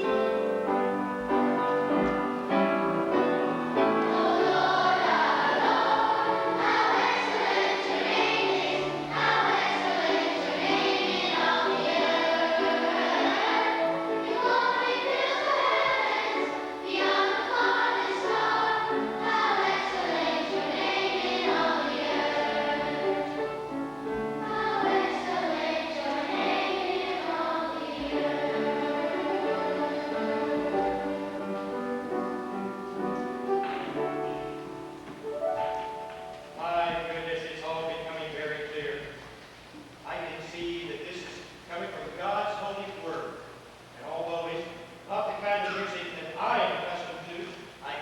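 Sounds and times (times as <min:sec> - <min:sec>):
church choir singing: 0:00.0 - 0:35.1.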